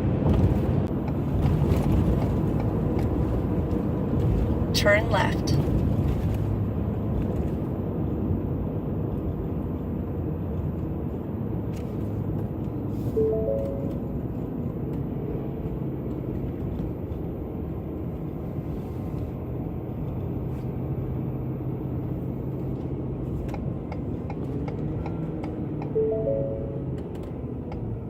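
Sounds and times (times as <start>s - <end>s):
engine and road rumble: 0.0s - 28.0s
three-note electronic chime: 13.2s - 14.0s, 26.0s - 26.9s.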